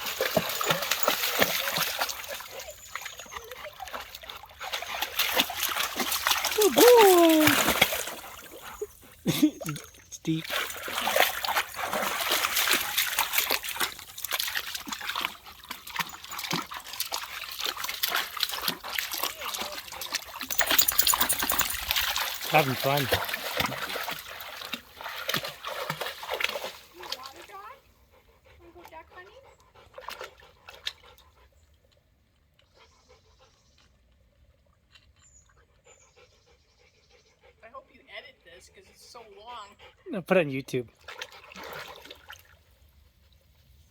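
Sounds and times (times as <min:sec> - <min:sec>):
stream trickling: 0:00.0 - 0:27.7, 0:40.2 - 0:43.8
dog splashing through water: 0:00.0 - 0:27.8, 0:28.6 - 0:31.3, 0:40.9 - 0:42.8.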